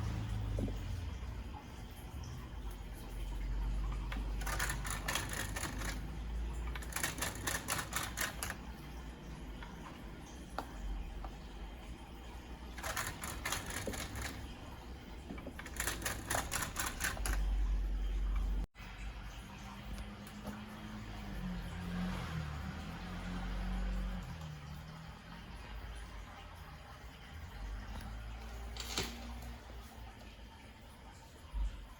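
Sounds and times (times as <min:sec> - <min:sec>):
disc tray mechanism clattering: 0:15.4 - 0:17.5.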